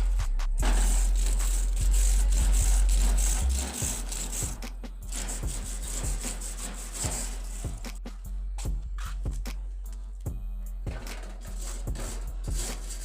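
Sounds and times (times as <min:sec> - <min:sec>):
wire brush scraping metal: 0:00.0 - 0:08.2, 0:10.9 - 0:13.0.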